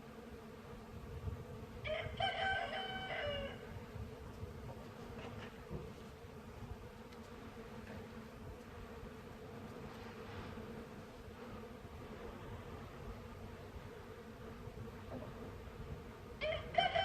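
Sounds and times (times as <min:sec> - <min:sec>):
bees humming: 0:00.0 - 0:17.0
rooster crowing: 0:01.8 - 0:03.7, 0:16.4 - 0:17.0.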